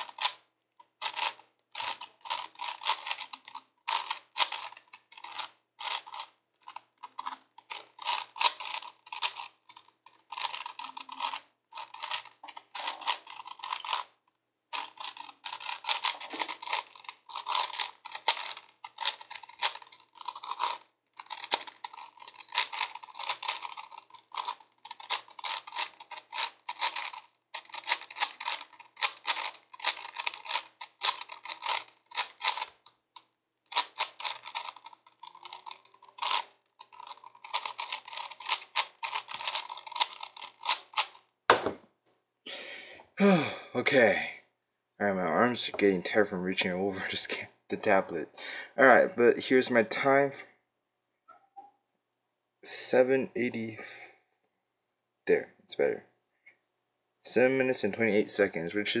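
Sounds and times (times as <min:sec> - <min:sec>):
puzzle cube plastic clicking: 0:00.0 - 0:41.6.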